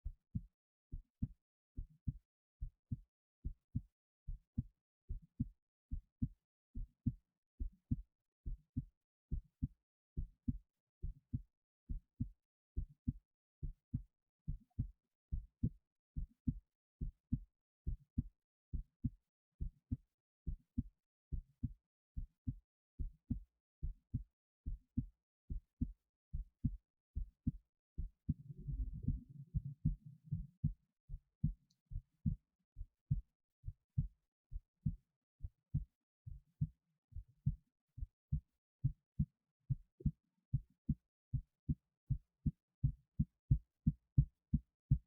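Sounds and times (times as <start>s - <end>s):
heartbeat thumps: 0.0s - 45.0s
low rumbling noise: 28.4s - 29.8s.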